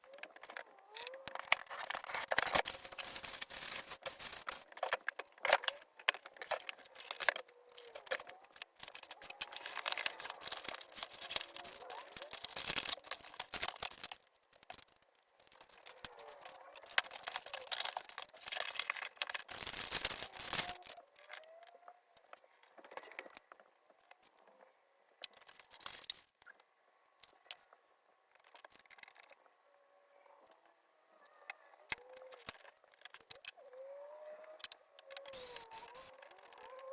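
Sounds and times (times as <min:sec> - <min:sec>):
plastic and paper crinkling: 0:00.0 - 0:21.6, 0:35.2 - 0:36.9
packaging tearing: 0:01.3 - 0:05.8, 0:06.4 - 0:14.9, 0:15.7 - 0:21.0.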